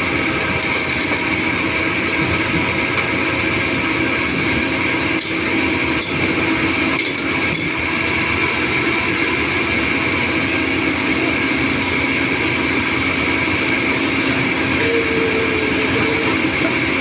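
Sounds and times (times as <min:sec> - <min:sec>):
excavator diesel engine and hydraulics: 0:00.0 - 0:17.0
constant whine: 0:06.1 - 0:17.0
higher steady tone: 0:12.4 - 0:17.0.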